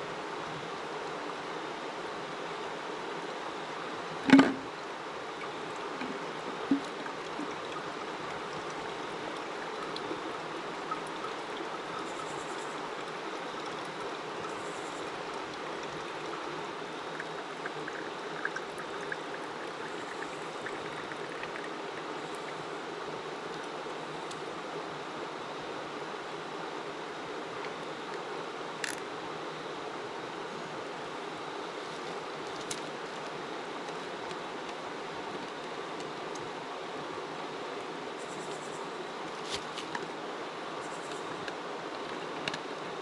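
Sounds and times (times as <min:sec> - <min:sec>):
running water: 0:03.2 - 0:29.4.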